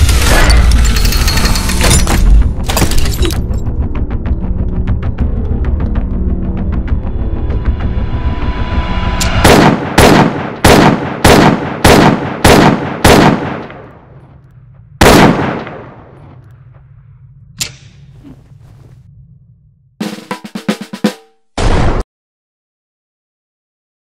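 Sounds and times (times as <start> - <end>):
gunshots: 9.3 - 14.2, 15.0 - 16.2.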